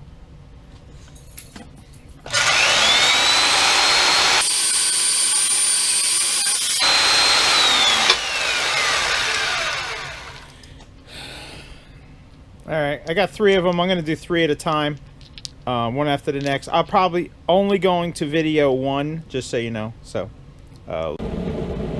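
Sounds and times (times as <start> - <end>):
electric power tool whining: 2.3 - 10.6.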